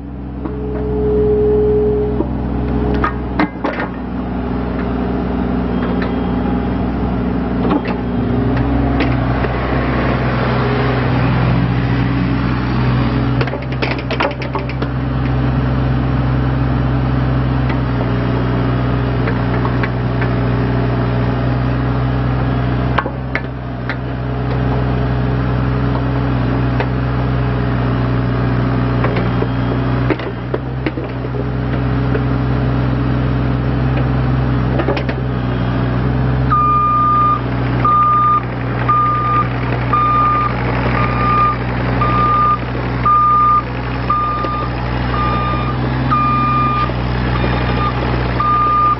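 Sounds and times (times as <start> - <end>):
diesel engine running: 0.0 - 48.9
travel alarm beeping: 0.5 - 2.2, 36.5 - 47.0, 47.7 - 48.9
engine knocks: 2.1 - 5.1, 5.7 - 6.8, 13.3 - 15.4, 19.1 - 20.6, 22.9 - 25.0, 28.8 - 32.4, 33.8 - 35.4, 36.4 - 48.9.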